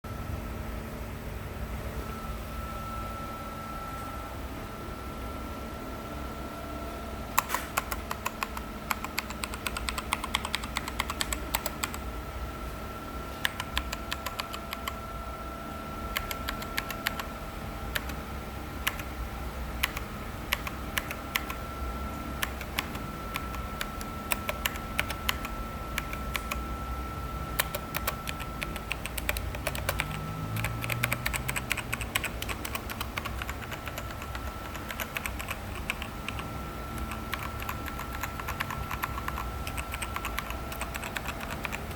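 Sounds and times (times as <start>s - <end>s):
mechanical keyboard typing: 7.4s - 12.1s, 13.4s - 15.0s, 16.1s - 19.2s, 19.8s - 21.6s, 22.4s - 26.7s, 27.5s - 41.9s.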